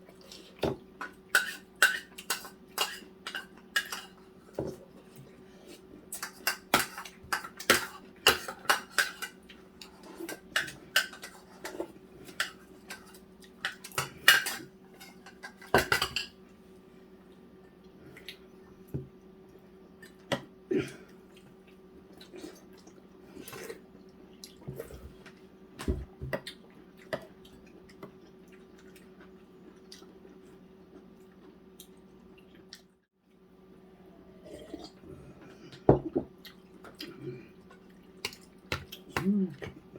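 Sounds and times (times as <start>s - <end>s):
faint steady hum: 0.0s - 39.9s
utensils clinking against dishes: 1.0s - 4.2s.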